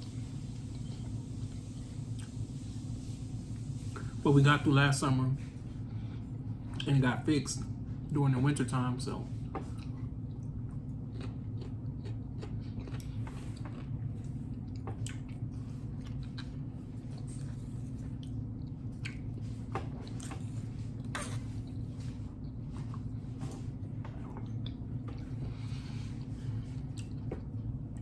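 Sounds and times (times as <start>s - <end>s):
steady low hum: 0.0s - 28.0s
chewing with wet mouth clicks: 9.7s - 20.5s, 24.1s - 25.4s, 26.2s - 28.0s.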